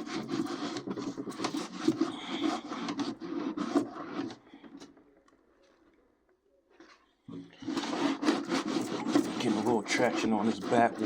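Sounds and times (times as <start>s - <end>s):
scrubbing inside toaster oven: 8.4s - 11.0s.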